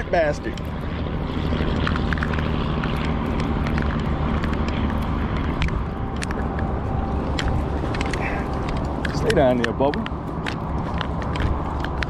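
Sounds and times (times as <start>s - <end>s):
low motor hum: 0.0s - 12.0s
light clicks and ticks: 0.4s - 12.0s.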